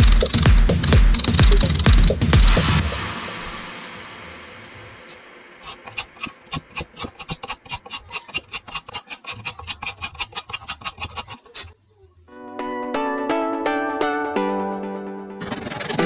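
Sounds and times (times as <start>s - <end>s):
hand tool rasping across wood: 5.9s - 11.8s
plucked-string music: 12.3s - 16.0s.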